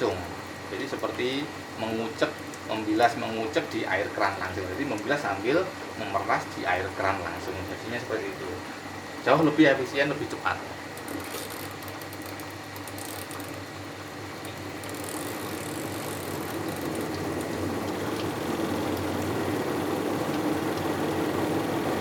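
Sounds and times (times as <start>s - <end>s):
washing machine spin tub humming: 0.0s - 22.0s
tap water pouring in: 10.8s - 22.0s.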